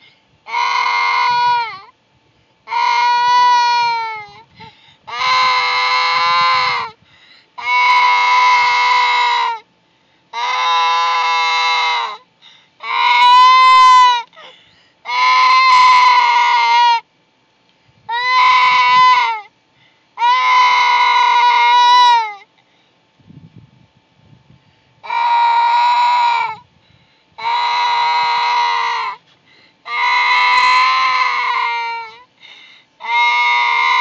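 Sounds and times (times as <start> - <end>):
loud crying wails: 0.5 - 1.9, 2.7 - 4.5, 5.1 - 7.0, 7.6 - 9.7, 10.4 - 12.2, 12.8 - 17.1, 18.1 - 19.5, 20.2 - 22.5, 25.0 - 26.6, 27.4 - 29.2, 29.8 - 32.3, 33.0 - 34.0.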